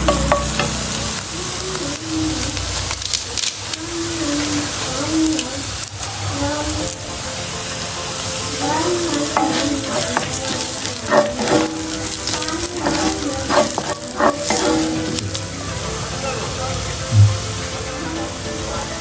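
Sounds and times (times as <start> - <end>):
spatula scraping and knocking pan: 0.0 - 1.3, 8.6 - 15.5
food sizzling in a pan: 0.0 - 19.0.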